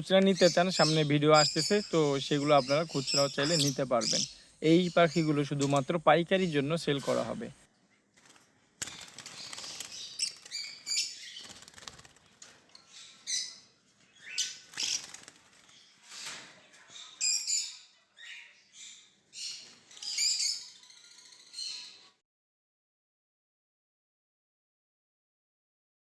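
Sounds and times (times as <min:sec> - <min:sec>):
lovebirds chirping: 0:00.0 - 0:08.1, 0:08.8 - 0:22.2
wing flutters: 0:08.1 - 0:12.7, 0:14.4 - 0:16.6.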